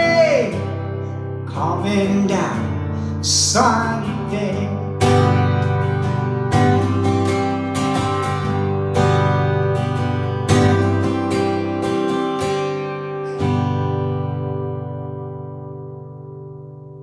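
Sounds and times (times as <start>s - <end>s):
acoustic guitar strumming chords: 0.0s - 17.0s.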